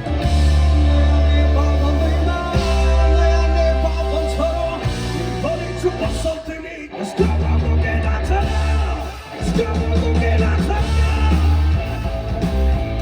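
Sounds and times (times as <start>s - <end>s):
heavy sustained bass: 0.0s - 6.2s
person singing: 0.0s - 12.4s
electric guitar: 0.0s - 13.0s.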